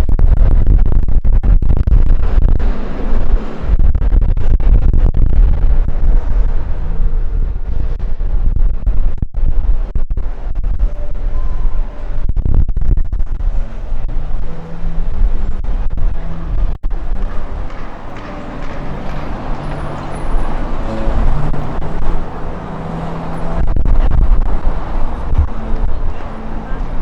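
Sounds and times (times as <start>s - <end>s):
wind buffeting microphone: 0.0s - 27.0s
city street noise: 2.2s - 3.8s, 5.1s - 8.6s, 9.6s - 12.3s, 13.3s - 27.0s.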